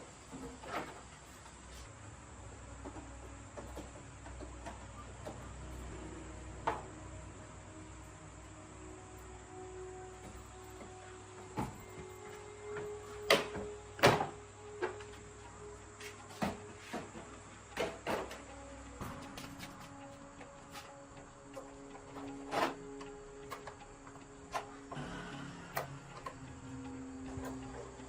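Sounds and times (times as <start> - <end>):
faint low hum: 0.0 - 28.0.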